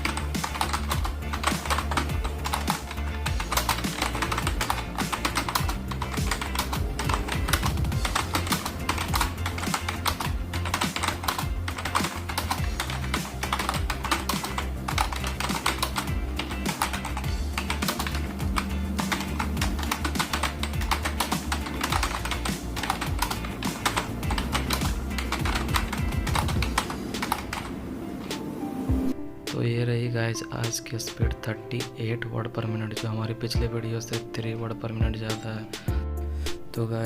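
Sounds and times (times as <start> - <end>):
background music with bass line: 0.0 - 27.5, 30.6 - 32.0, 32.9 - 37.0
fast typing on keyboard: 0.0 - 27.7.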